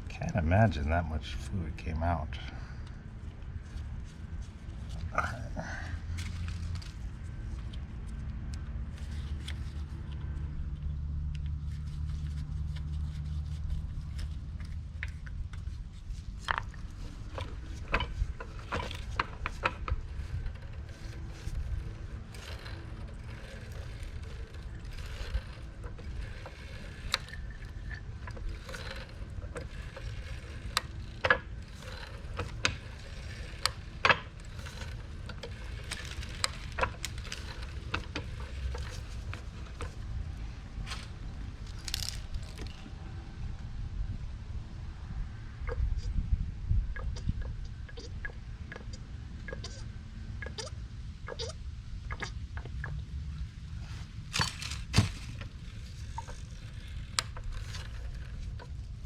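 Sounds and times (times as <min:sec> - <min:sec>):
low steady hum: 0:00.0 - 0:59.0.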